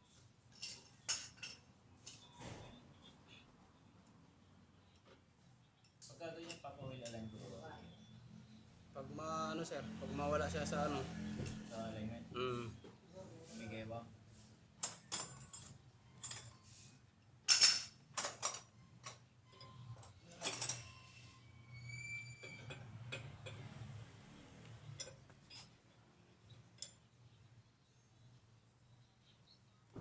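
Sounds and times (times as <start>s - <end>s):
metal tools clinking on car parts: 0.5s - 2.3s, 14.8s - 16.6s, 17.4s - 21.2s, 24.8s - 25.8s.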